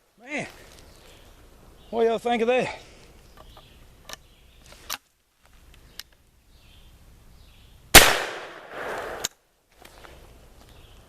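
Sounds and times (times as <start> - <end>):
shotgun blast: 8.0 - 9.2.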